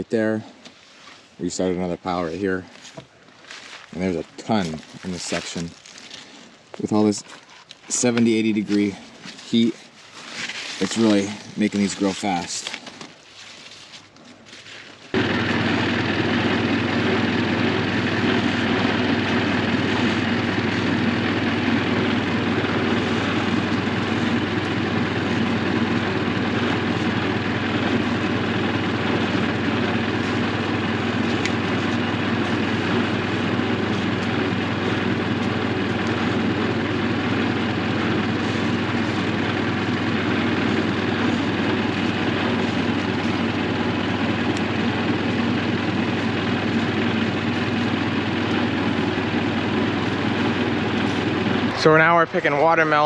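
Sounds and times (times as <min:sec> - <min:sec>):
engine running steadily: 0:10.8 - 0:13.2, 0:15.1 - 0:53.0.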